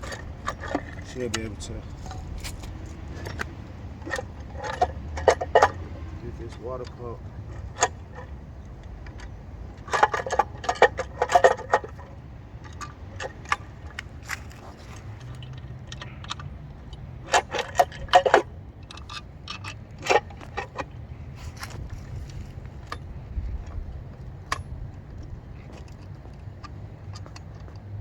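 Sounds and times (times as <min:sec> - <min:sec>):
metal tools clinking: 0:00.0 - 0:08.3.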